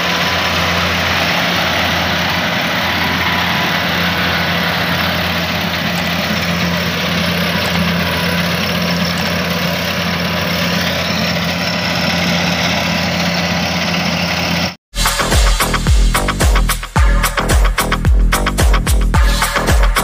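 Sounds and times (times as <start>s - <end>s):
combine harvester engine: 0.0s - 18.0s
upbeat electronic music: 15.0s - 20.0s.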